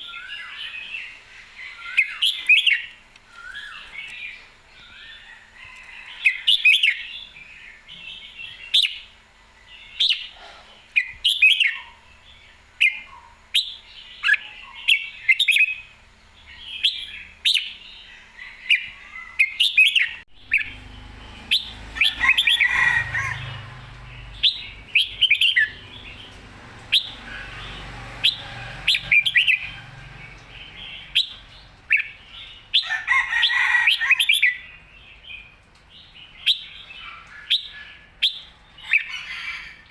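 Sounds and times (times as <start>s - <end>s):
bulbul singing: 18.7s - 32.9s
low rumble: 20.3s - 32.3s.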